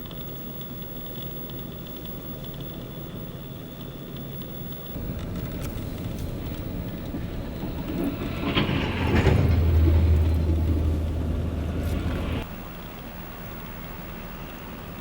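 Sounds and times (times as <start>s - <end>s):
heavy vehicle rumbling by: 5.0s - 15.0s.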